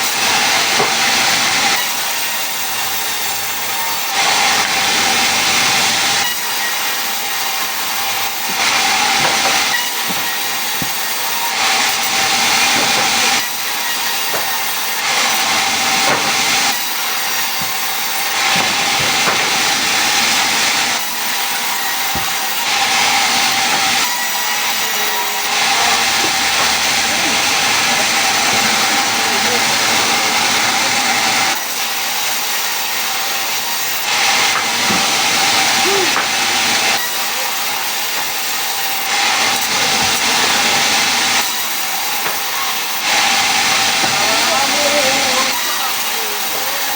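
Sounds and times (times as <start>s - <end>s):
power saw cutting wood: 0.0s - 46.9s.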